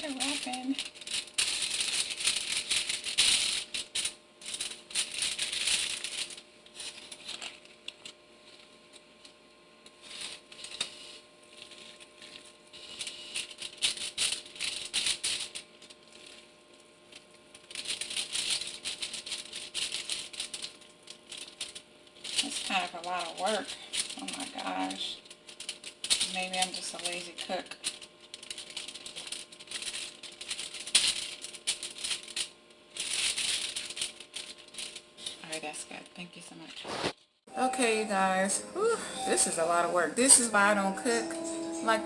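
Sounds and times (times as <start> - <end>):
crinkly rustling and crackling: 0.0 - 42.0
faint steady hum: 0.0 - 42.0.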